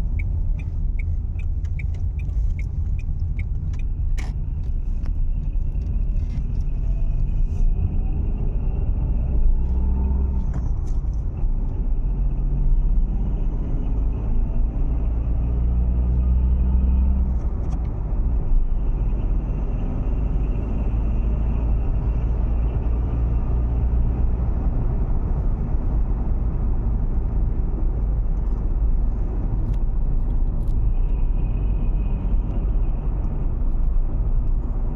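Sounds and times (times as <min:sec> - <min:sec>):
car engine running: 0:00.0 - 0:07.7.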